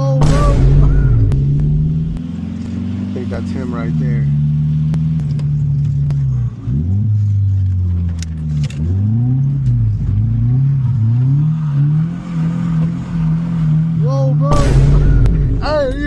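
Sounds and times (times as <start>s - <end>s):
car engine revving hard: 0.2s - 5.4s.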